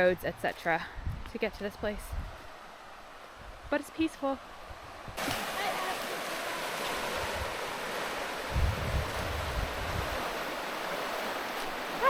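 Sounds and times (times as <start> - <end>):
wind buffeting on microphone: 0.0 - 2.5, 8.4 - 10.5
creek water rushing: 1.6 - 12.0.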